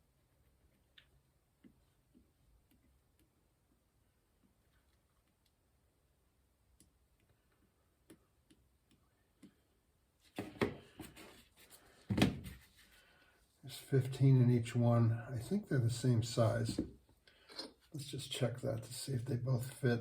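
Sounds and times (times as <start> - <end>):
clattering and handling noise: 10.2 - 13.3.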